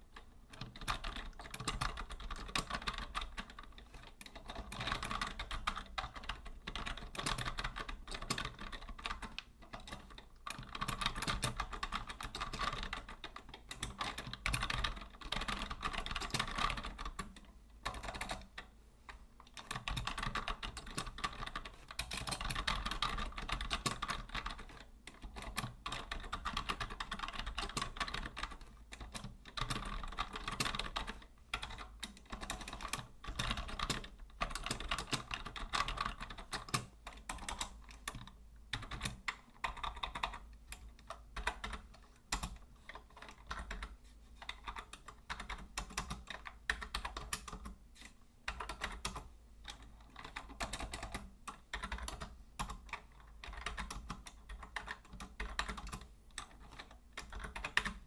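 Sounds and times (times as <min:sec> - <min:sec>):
keyboard typing clicks: 0:19.5 - 0:58.0.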